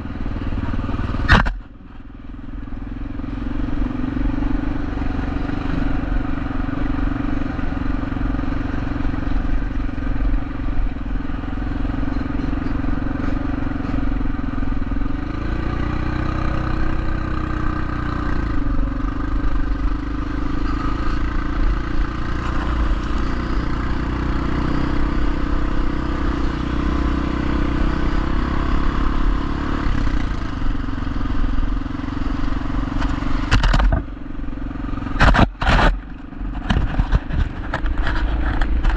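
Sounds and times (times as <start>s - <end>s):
motorcycle engine running: 0.0s - 38.9s.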